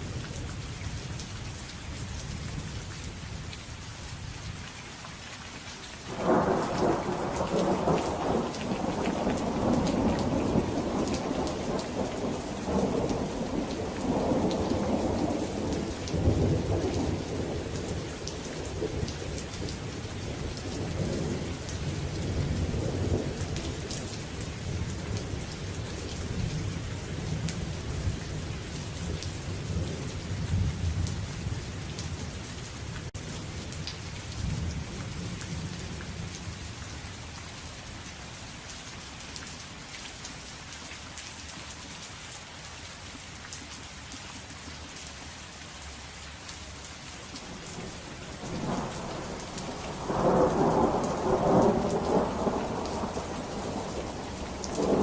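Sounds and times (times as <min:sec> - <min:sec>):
steady rain falling: 0:00.0 - 0:55.0
thunder rumbling: 0:06.1 - 0:25.6, 0:47.6 - 0:55.0.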